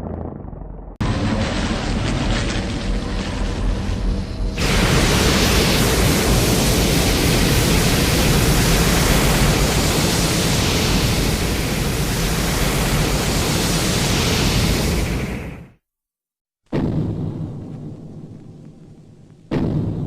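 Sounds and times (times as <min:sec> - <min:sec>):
loud steady rushing noise: 0:01.0 - 0:15.6.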